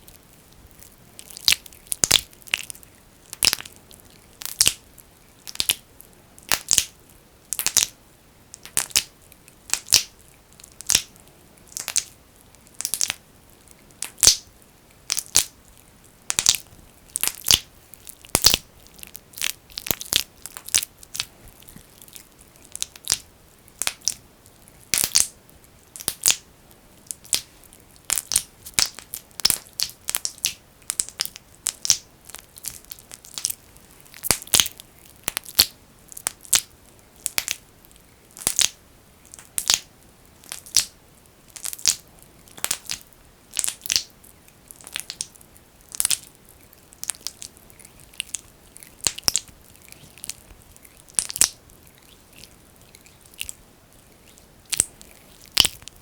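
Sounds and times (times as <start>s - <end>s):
fingers squelching petroleum jelly: 44.7s - 56.0s.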